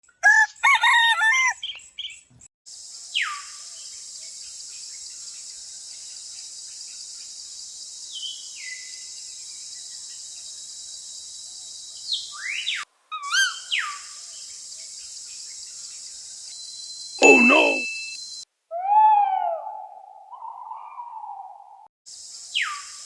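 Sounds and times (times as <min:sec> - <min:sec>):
rooster crowing: 0:00.2 - 0:01.6
crickets chirping: 0:02.7 - 0:12.7, 0:14.1 - 0:18.4.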